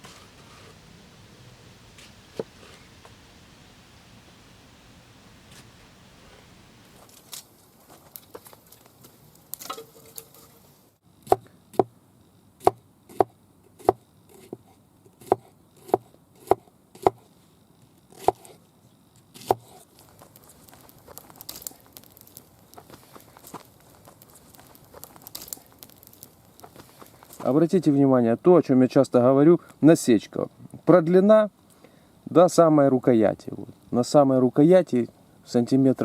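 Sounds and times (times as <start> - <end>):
knife chopping into wood: 12.6 - 14.6, 15.2 - 17.2, 18.2 - 18.6, 19.4 - 19.8
soft rustling: 19.6 - 27.6.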